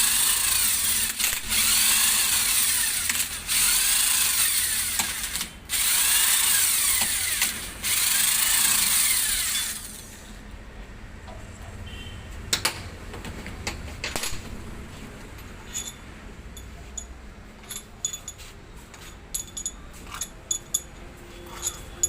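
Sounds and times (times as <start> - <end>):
metal tools clinking on engine parts: 15.6 - 22.0.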